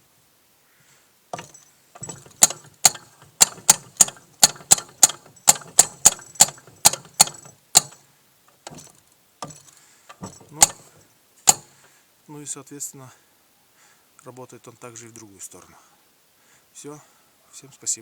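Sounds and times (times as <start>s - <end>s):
ratchet clicking: 1.4s - 11.9s.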